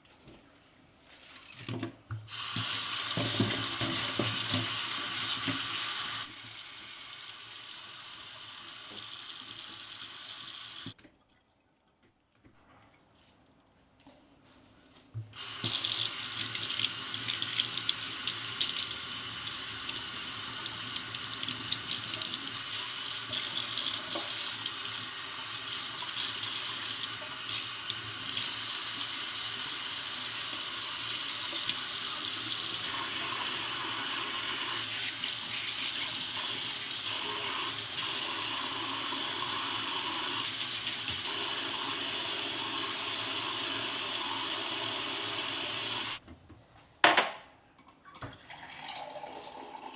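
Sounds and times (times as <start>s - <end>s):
tap running into sink: 2.3s - 5.9s.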